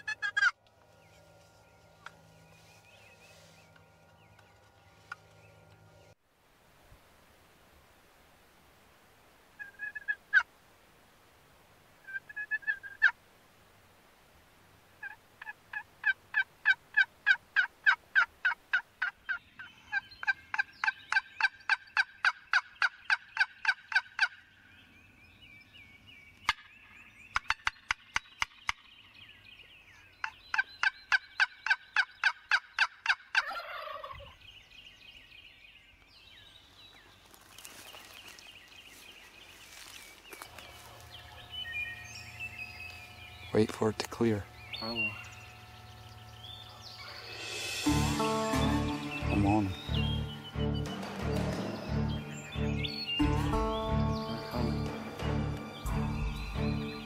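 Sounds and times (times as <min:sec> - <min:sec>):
turkey yelping: 0:00.0 - 0:00.6, 0:09.6 - 0:10.5, 0:12.0 - 0:13.2, 0:15.0 - 0:24.4, 0:30.2 - 0:34.3.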